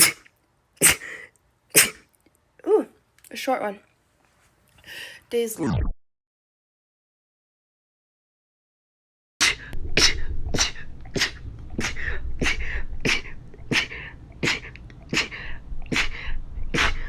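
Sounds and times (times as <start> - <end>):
woman sneezing: 0.0 - 2.1.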